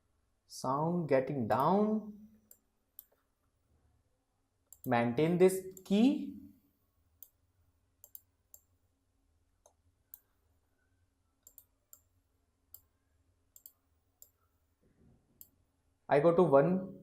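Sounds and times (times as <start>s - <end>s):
computer mouse clicks: 2.5s - 3.3s, 4.7s - 4.9s, 8.0s - 8.7s, 11.4s - 12.1s, 13.5s - 14.4s.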